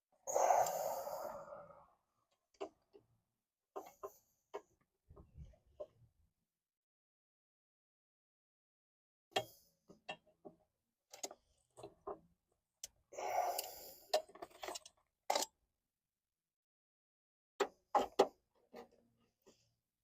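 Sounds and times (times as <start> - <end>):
clicks and knocks of parts: 14.1 - 15.6.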